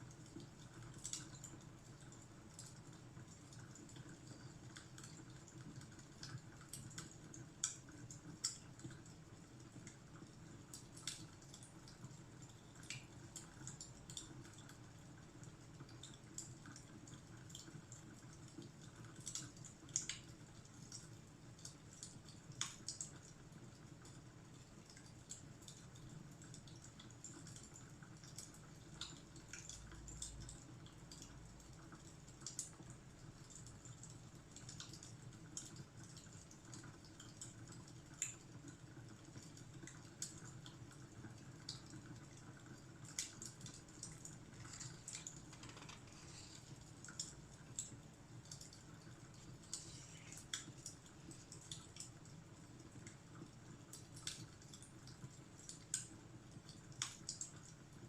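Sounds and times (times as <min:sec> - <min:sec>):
fire crackling and popping: 0:00.1 - 0:14.8, 0:15.4 - 0:57.8.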